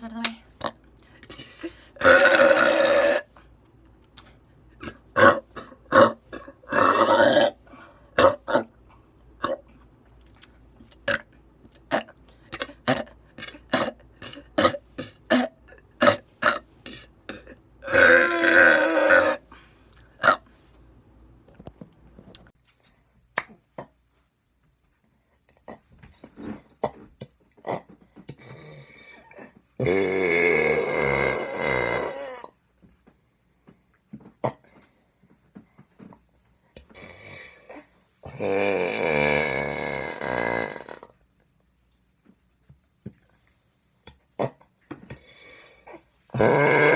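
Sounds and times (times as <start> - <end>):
woman burping loudly: 0.6 - 3.3, 4.8 - 7.6, 8.2 - 8.7, 11.9 - 19.4, 28.4 - 32.5, 38.3 - 41.2, 46.4 - 46.9.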